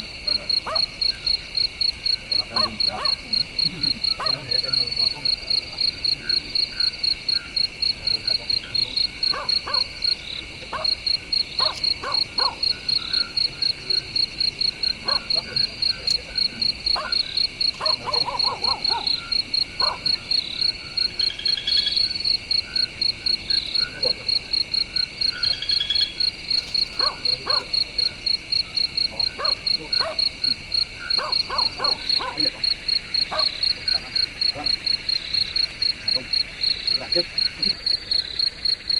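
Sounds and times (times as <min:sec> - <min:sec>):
cricket chirping: 0:00.0 - 0:38.9
insect drone: 0:00.0 - 0:38.9
low animal calls: 0:02.4 - 0:24.6.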